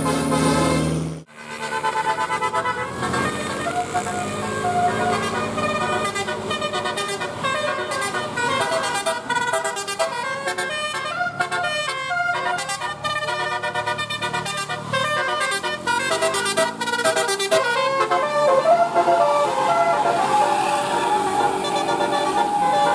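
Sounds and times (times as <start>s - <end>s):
bus multi-tone horn playing a tune: 0.0s - 22.9s.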